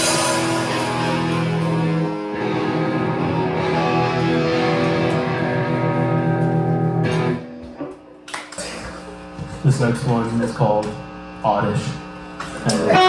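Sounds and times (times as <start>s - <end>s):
electric guitar chord ringing: 0.0s - 8.0s, 12.6s - 13.0s.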